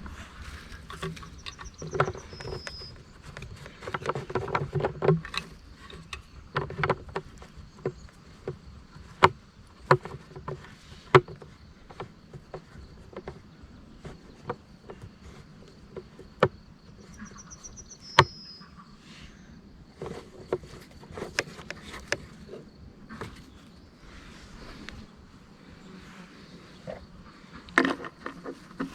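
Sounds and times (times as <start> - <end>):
sharp clicks and knocks: 0.4 - 13.4
short bird-like chirp: 17.1 - 18.8.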